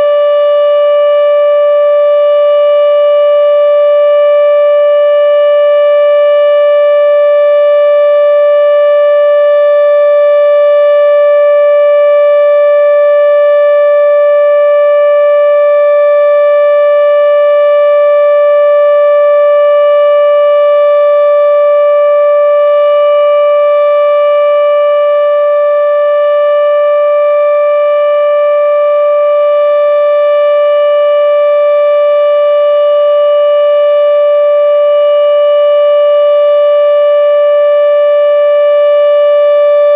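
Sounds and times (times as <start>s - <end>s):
steady warning siren: 0.0s - 39.9s.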